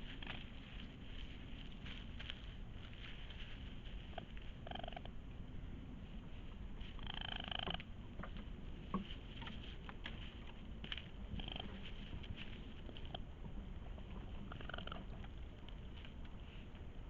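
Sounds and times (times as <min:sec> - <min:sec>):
small clicks and rustles: 0:00.0 - 0:05.1, 0:06.8 - 0:17.0
raccoon high-pitched cries: 0:11.4 - 0:11.8.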